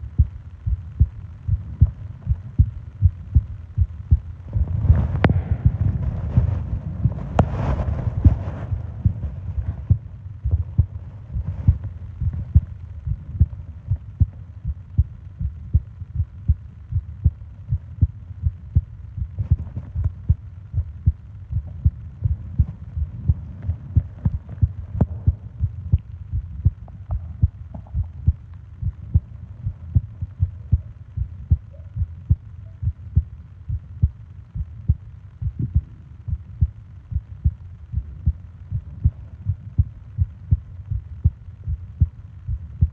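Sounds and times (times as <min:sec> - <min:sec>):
heartbeat thumps: 0:00.0 - 0:42.9.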